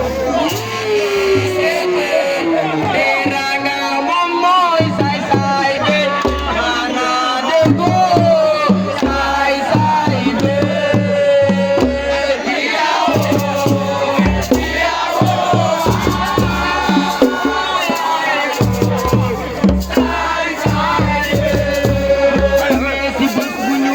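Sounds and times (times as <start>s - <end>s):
crowd singing along: 0.0s - 23.9s
person singing over driving beat: 0.0s - 23.9s.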